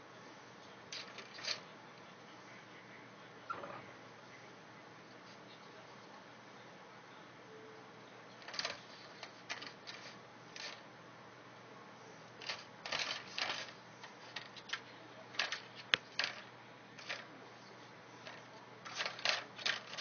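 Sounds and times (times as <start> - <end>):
cat toy rattling and scraping: 0.9 - 1.7, 8.4 - 10.8, 12.4 - 17.3, 18.2 - 20.0.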